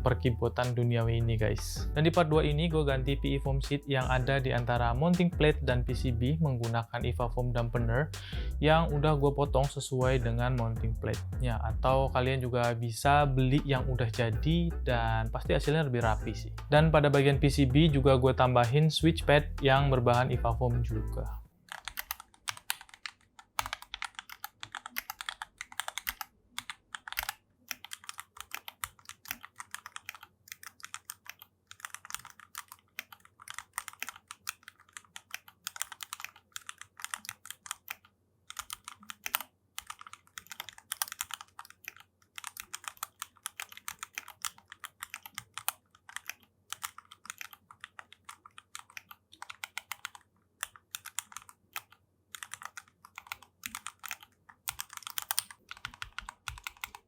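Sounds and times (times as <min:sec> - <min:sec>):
mechanical keyboard typing: 0:21.7 - 0:57.0.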